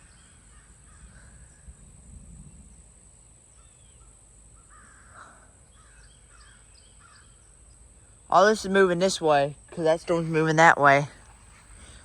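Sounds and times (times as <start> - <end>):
distant bird calls: 0.0 - 1.9, 3.5 - 12.0.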